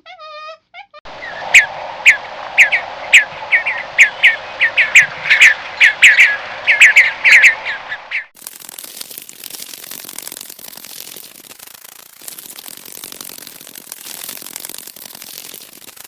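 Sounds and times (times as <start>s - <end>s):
sharp descending chirps: 1.1s - 8.4s
faint crackling: 1.1s - 16.0s.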